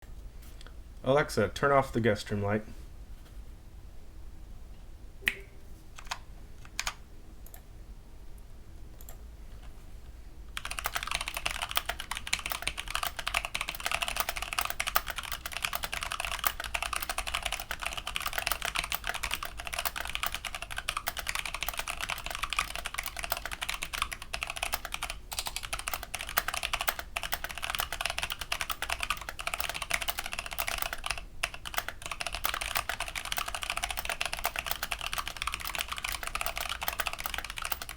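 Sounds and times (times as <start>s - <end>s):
mechanical keyboard typing: 6.0s - 7.6s, 10.6s - 37.9s.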